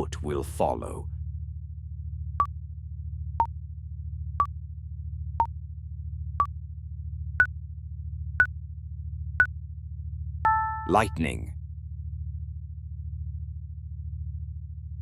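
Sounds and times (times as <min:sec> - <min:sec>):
countdown timer beeps: 0:10.5 - 0:11.4.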